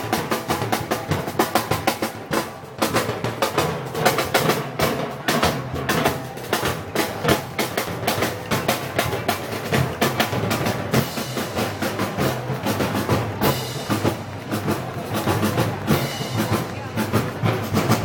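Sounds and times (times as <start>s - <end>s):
live band music: 0.0s - 18.0s
snare and bass drum beat: 0.0s - 18.0s.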